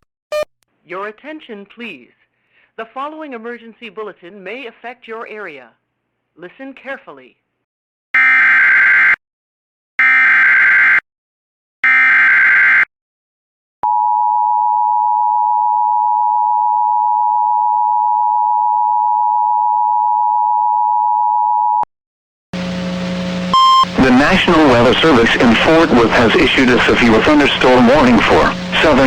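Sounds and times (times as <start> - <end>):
steady two-tone beep: 23.5 - 23.9
digital data bursts: 23.6 - 29.0.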